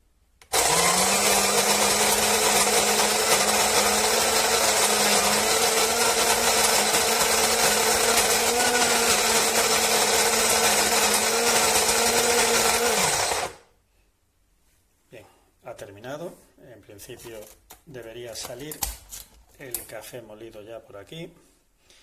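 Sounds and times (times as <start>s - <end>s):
coffee grinder grinding beans: 0.4s - 13.6s.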